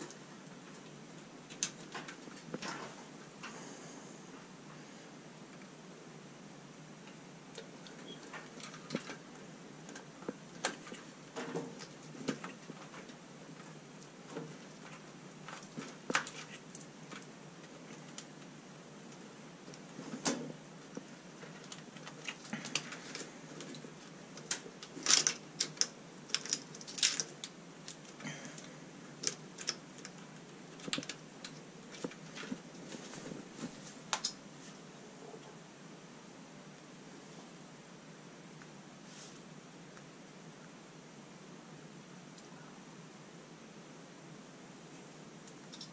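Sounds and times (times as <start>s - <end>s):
small hard objects clicking: 24.4s - 30.2s, 45.5s - 45.9s.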